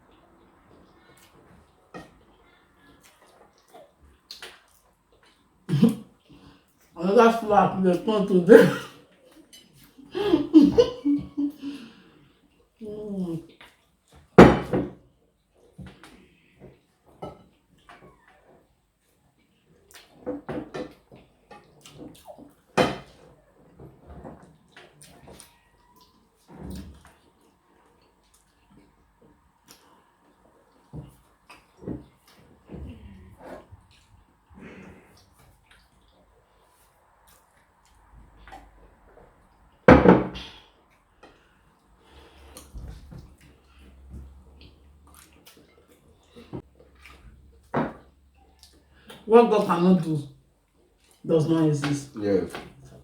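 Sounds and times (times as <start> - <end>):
cutlery clinking on plates: 22.8 - 23.3.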